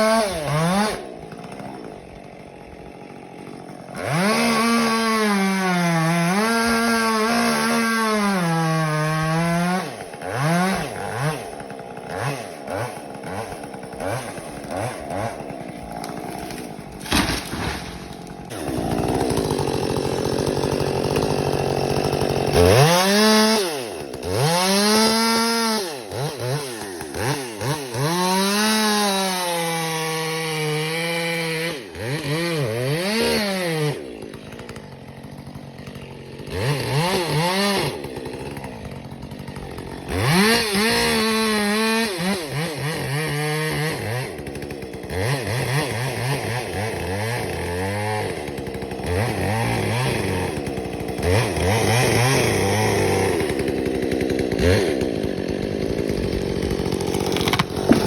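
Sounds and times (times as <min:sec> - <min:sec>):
chainsaw engine revving: 0:00.0 - 0:58.0.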